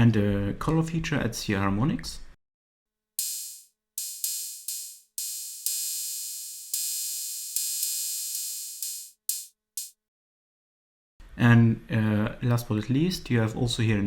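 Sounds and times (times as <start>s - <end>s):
drum machine open hi-hat: 3.2s - 10.0s.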